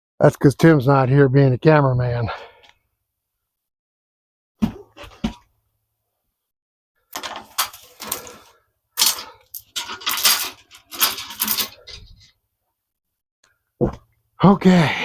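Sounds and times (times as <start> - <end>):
metallic clinking and rattling: 7.2 - 12.3.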